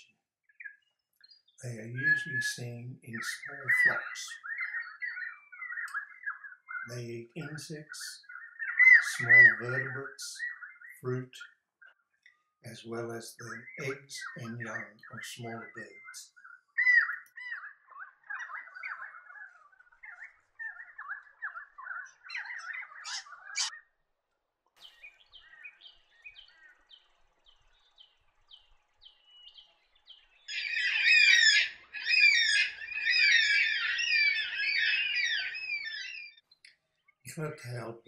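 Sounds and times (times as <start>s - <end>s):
dense bird chorus: 0.0s - 23.9s, 24.8s - 38.0s
faint high bird chirps: 0.0s - 24.0s, 24.8s - 38.0s
wavering gurgling bird calls: 1.6s - 12.0s, 12.7s - 23.9s, 30.1s - 36.4s.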